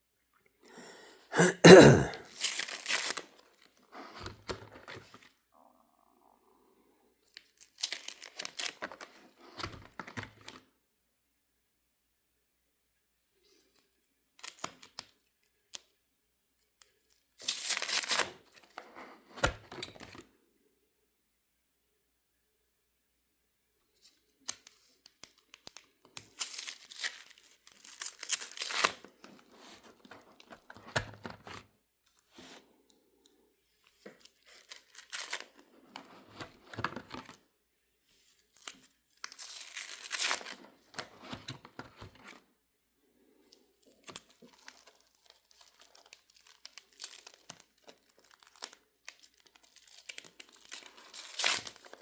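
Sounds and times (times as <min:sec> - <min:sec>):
cards and paper rustling: 0:02.2 - 0:05.3, 0:07.4 - 0:10.6, 0:17.1 - 0:20.2, 0:24.1 - 0:32.6, 0:33.8 - 0:37.4, 0:38.1 - 0:42.4, 0:43.4 - 0:52.0.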